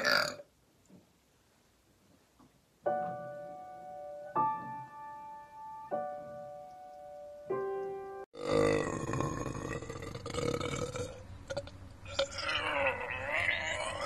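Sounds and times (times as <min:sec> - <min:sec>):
slow piano chords: 0:02.8 - 0:08.3.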